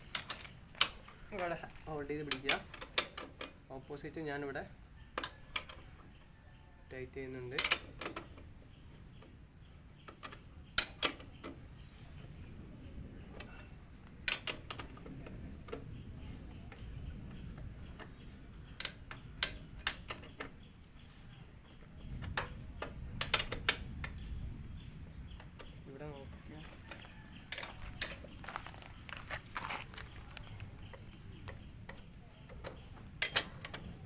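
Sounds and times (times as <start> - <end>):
ring spanners clinking on axle nut: 30.7 - 33.9.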